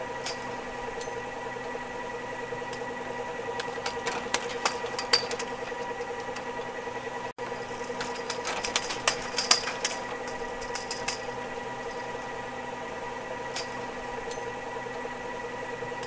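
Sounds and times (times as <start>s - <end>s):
ski lift motor hum: 0.0s - 16.0s
cable clicks and rattles: 2.7s - 6.7s, 7.8s - 12.2s.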